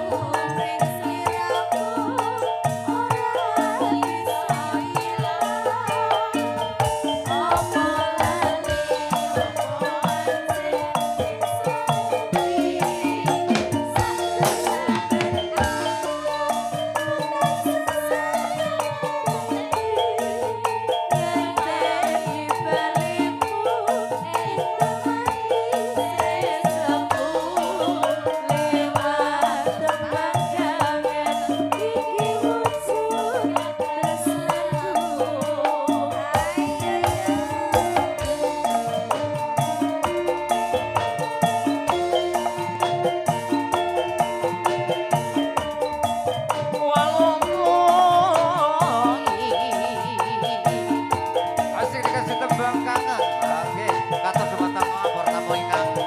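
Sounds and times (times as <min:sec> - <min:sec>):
struck percussion and drum beats: 0:00.0 - 0:56.0
pitch-bending melody: 0:30.0 - 0:56.0.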